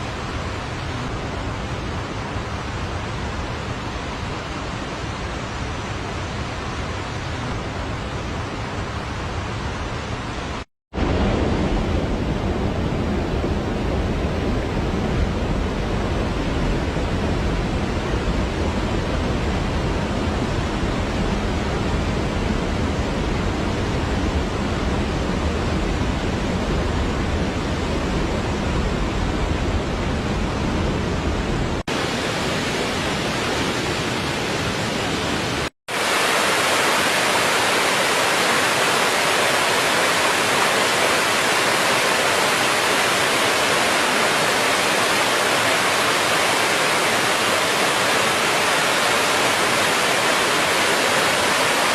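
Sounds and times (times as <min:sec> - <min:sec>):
waterfall rushing: 0:31.8 - 0:51.9.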